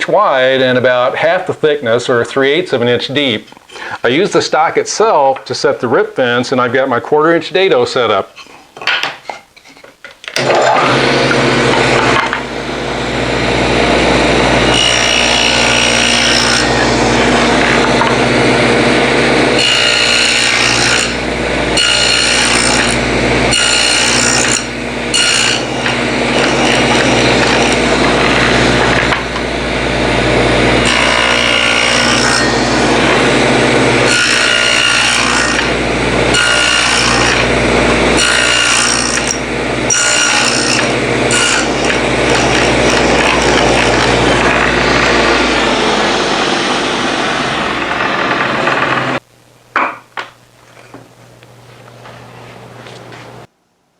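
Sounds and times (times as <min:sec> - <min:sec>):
saw blades cutting wood: 0:10.4 - 0:49.2
table saw motor hum: 0:10.4 - 0:49.2.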